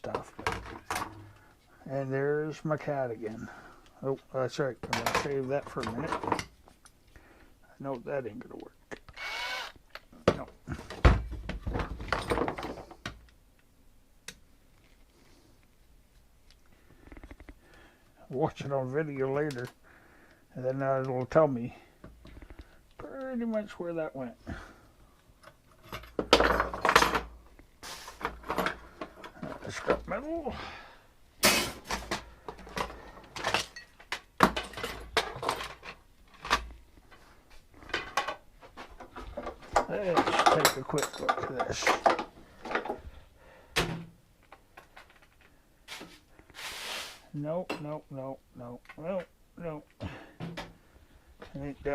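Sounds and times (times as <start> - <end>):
tools clattering on workbench: 10.3 - 13.0, 25.4 - 27.4, 31.4 - 36.7, 37.8 - 43.0
metal tools clinking on a workbench: 32.8 - 36.6, 39.8 - 42.9.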